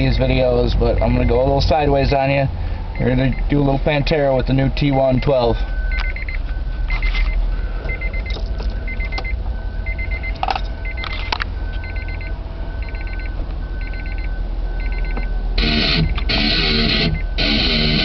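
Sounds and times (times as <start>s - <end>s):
car electronic warning chime: 0.0s - 18.0s
deep low rumble: 5.6s - 18.0s.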